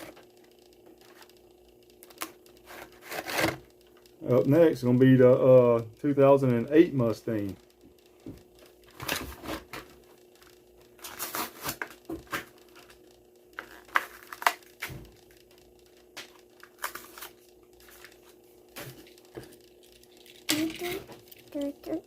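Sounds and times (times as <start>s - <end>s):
plastic packaging crinkling and tearing: 11.0s - 13.0s, 13.6s - 14.9s, 16.2s - 18.4s.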